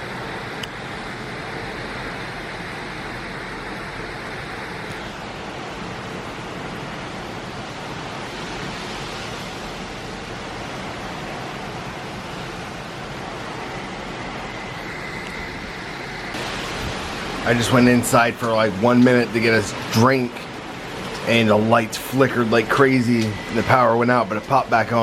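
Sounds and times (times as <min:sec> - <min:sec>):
heavy rain and wind: 0:00.0 - 0:25.0.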